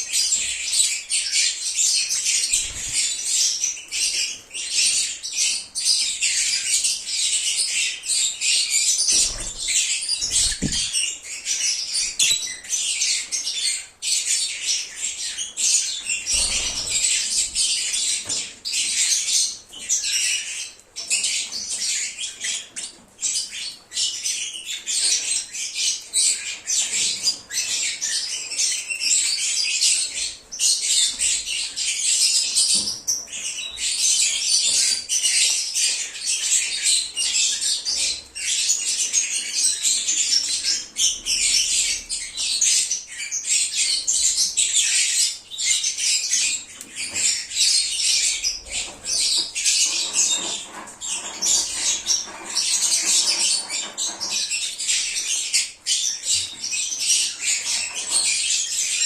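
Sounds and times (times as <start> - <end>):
lovebirds chirping and squawking: 0.0 - 59.0.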